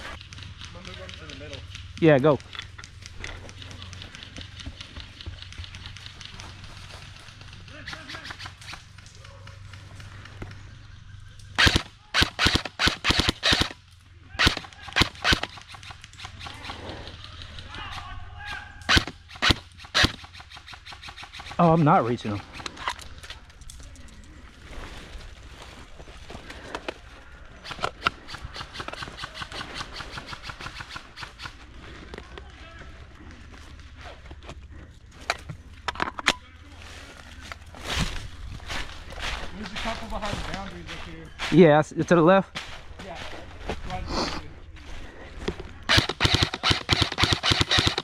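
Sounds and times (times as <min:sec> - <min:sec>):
airsoft guns firing: 0:00.0 - 0:10.5, 0:11.5 - 0:22.7, 0:27.6 - 0:31.6, 0:45.9 - 0:48.0
airsoft gun shots: 0:11.6 - 0:13.8, 0:14.4 - 0:16.8, 0:17.8 - 0:21.6, 0:45.9 - 0:48.0.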